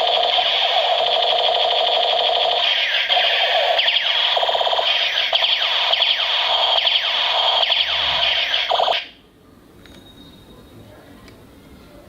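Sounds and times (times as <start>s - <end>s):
toy gun electronic firing sound: 0.0s - 9.2s.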